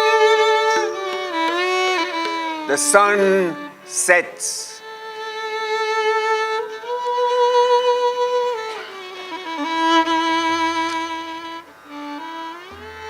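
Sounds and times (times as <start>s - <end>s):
low drone: 0.0s - 3.7s, 8.7s - 13.0s
violin playing slow melody: 0.0s - 13.0s.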